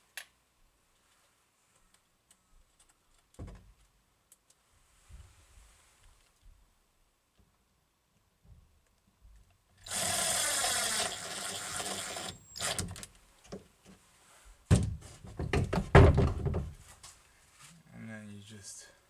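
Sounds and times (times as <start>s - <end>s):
power drill driving screw: 9.8s - 13.1s.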